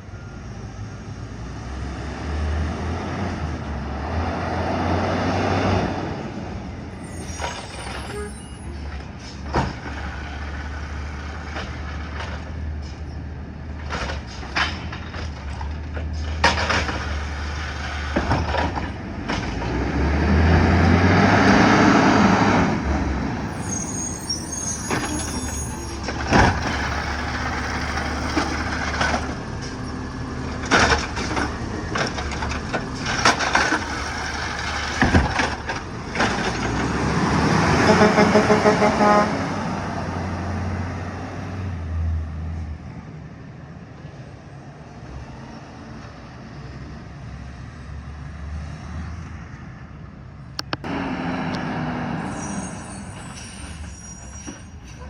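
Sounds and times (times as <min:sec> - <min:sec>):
truck diesel engine running: 0:22.1 - 0:39.2
air brake hisses: 0:23.4 - 0:27.4.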